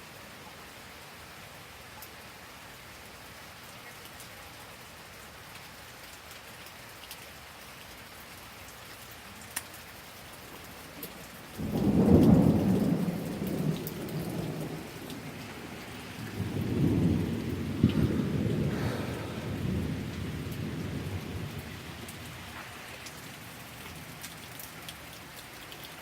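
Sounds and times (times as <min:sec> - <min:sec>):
steady rain falling: 0:00.0 - 0:26.0
thunder rumbling and cracking: 0:11.5 - 0:22.8.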